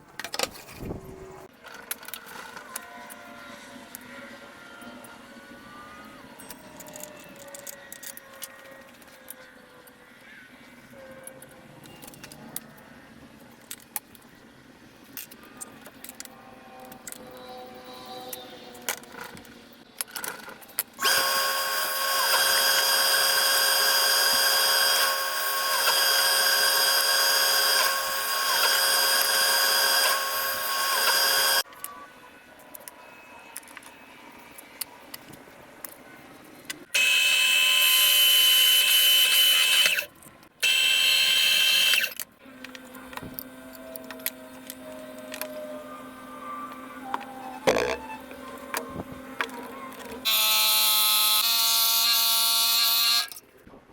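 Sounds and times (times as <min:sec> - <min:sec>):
electric power tool whining: 0:21.0 - 0:31.6, 0:37.0 - 0:42.8, 0:49.4 - 0:53.4.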